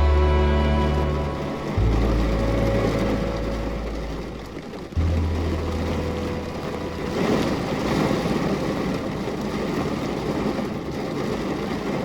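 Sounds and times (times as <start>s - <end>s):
low hum: 0.0s - 9.3s
steady rain hiss: 0.0s - 12.0s.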